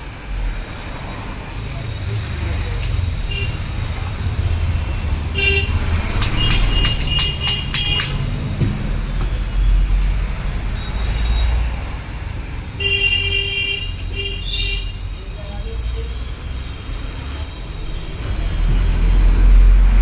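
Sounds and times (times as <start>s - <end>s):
road traffic: 0.0s - 20.0s
vehicle horns honking: 5.3s - 5.8s, 12.8s - 15.0s.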